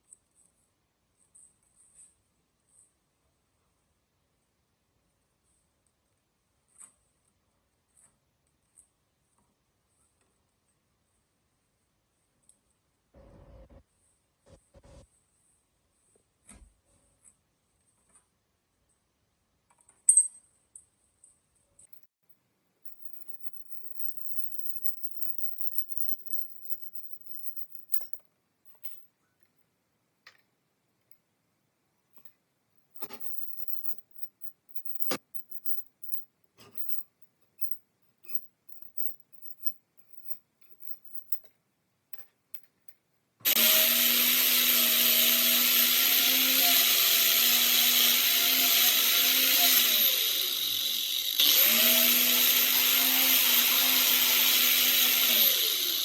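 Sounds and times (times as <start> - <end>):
small metal parts tapping: 22.8 - 29.1, 32.1 - 43.0
electric power tool humming: 43.5 - 56.0.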